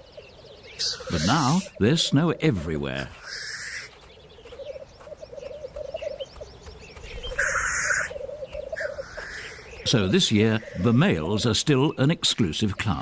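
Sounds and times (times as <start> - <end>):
grouse hissing calls: 0.8 - 1.8, 3.2 - 3.9, 7.2 - 11.0.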